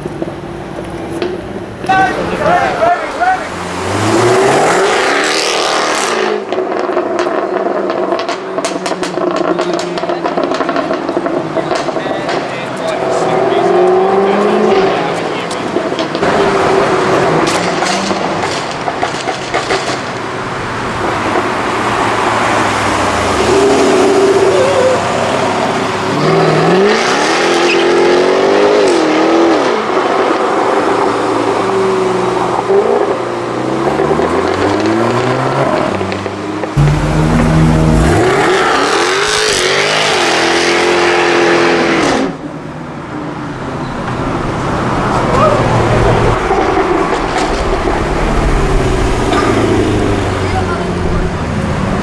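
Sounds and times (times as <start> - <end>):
exhaust crackling and popping: 0.0 - 41.1, 41.8 - 52.0
car engine accelerating hard: 0.0 - 52.0
road noise: 0.0 - 52.0
car engine running: 33.6 - 40.3.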